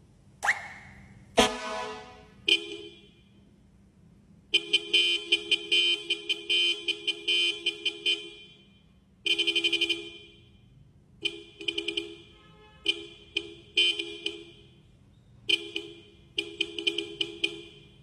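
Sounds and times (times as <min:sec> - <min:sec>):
car horn tooting: 0:01.4 - 0:03.2, 0:11.2 - 0:14.4.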